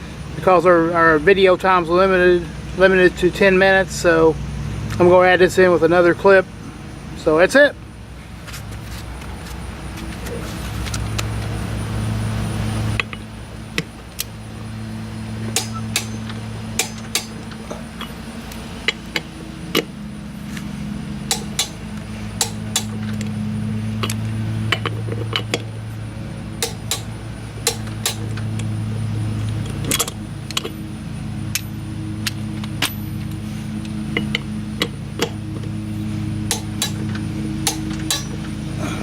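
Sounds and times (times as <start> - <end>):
steady low hum: 7.8 - 39.0
metallic clicks of torque wrench: 15.6 - 17.6, 21.3 - 23.2, 26.6 - 28.4, 36.5 - 37.0, 37.7 - 38.4.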